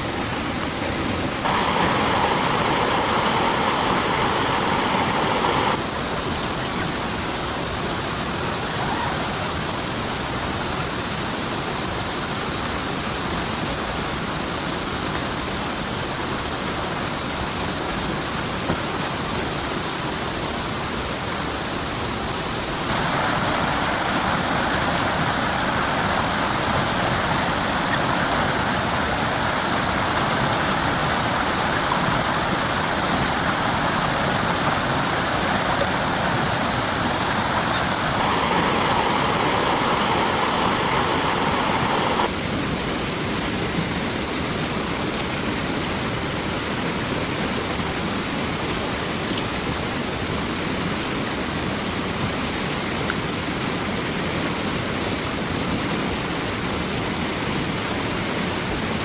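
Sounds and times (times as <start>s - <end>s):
heavy rain falling: 0.0s - 11.6s, 22.7s - 42.4s.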